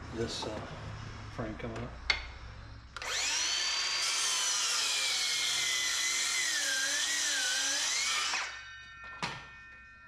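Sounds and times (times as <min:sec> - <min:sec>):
power saw cutting wood: 0:03.0 - 0:08.6.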